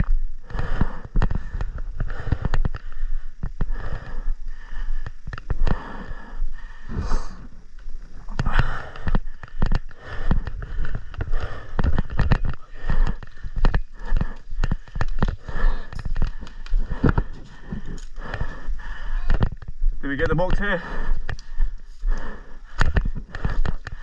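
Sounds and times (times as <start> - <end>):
breathing: 0.0 - 24.0
microphone bumps and rustling: 8.2 - 18.6.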